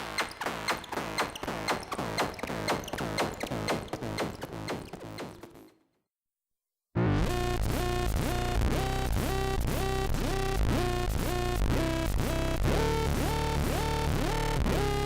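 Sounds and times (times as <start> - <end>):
steady low synth bass: 7.0 - 15.0.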